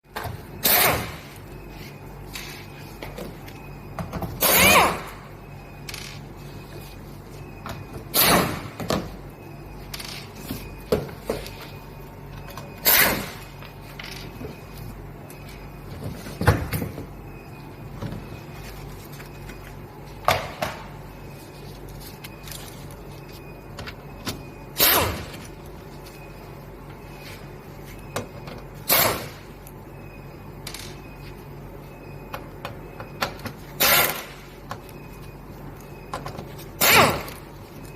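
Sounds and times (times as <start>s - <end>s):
mechanical squeak: 4.4s - 6.6s, 12.7s - 14.7s.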